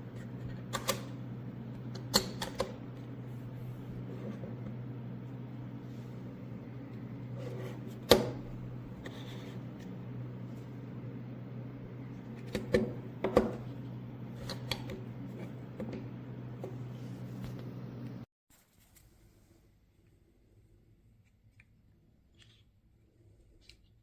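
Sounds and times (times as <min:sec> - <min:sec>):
steady low hum: 0:00.0 - 0:18.3.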